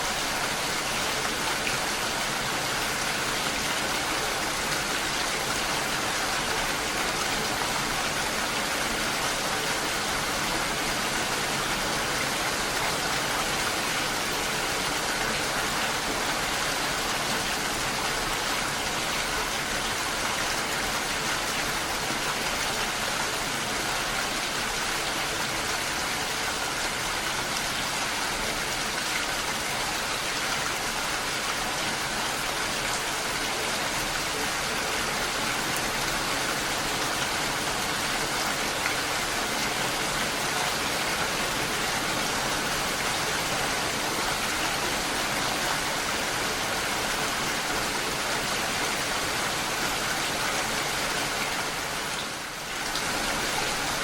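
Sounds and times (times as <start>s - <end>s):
steady rainfall: 0.0s - 54.0s.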